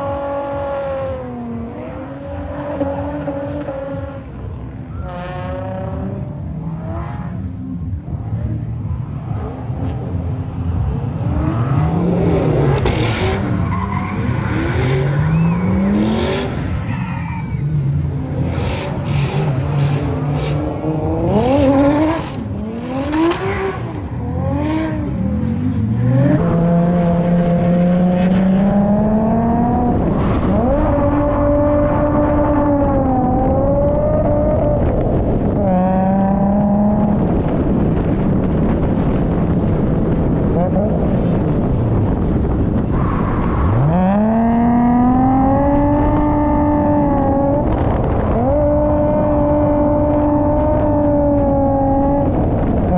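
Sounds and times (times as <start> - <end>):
car engine revving: 0.0 - 52.9
tyre squeal: 12.8 - 18.0.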